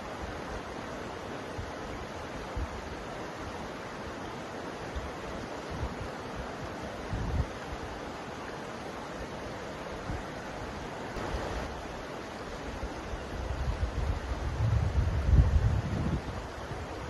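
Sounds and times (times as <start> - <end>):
river flowing: 0.0 - 17.0
wind on microphone: 7.0 - 7.7, 13.1 - 17.0.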